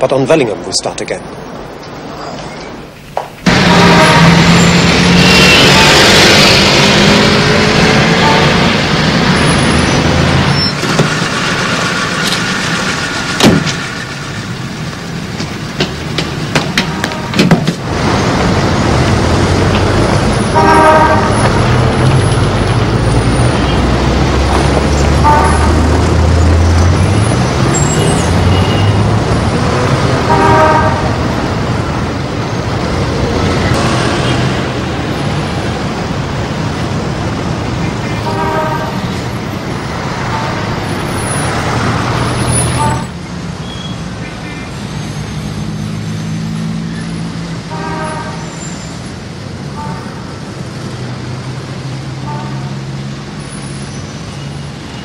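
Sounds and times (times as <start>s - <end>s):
passing traffic: 0.0s - 55.0s
car horns honking: 3.5s - 7.3s, 7.9s - 8.8s, 16.5s - 17.8s, 20.4s - 22.3s, 25.1s - 26.0s, 27.7s - 29.2s, 30.2s - 31.3s, 37.9s - 39.2s, 42.3s - 44.0s, 47.7s - 48.6s.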